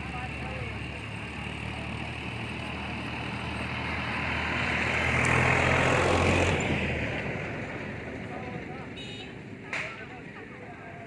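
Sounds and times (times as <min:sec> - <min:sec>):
vehicle engine passing: 0:00.0 - 0:08.9.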